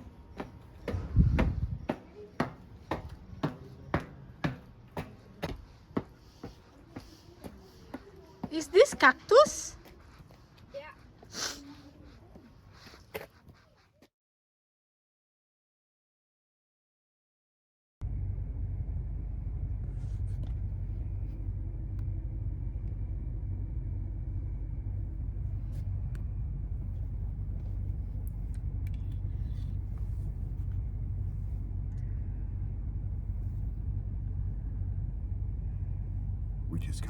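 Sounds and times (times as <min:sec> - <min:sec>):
car road and engine rumble: 0:00.0 - 0:09.1, 0:18.0 - 0:37.0.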